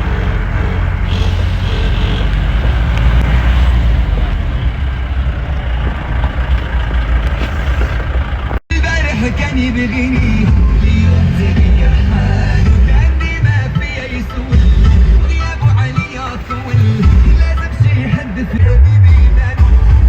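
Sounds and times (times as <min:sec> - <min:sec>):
vehicle engine and road rumble: 0:00.0 - 0:20.0
song with singing: 0:08.7 - 0:20.0.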